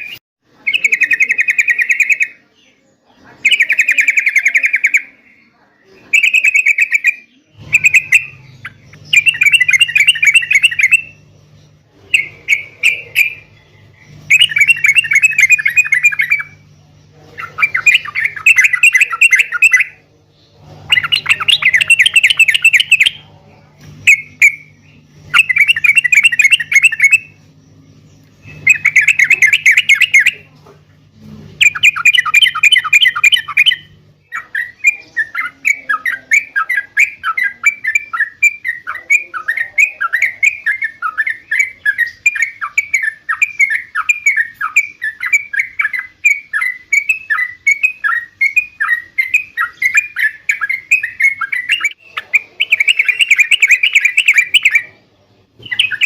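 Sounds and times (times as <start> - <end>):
bird singing bubbling chatter: 0.0 - 56.0
steady low hum: 0.0 - 56.0.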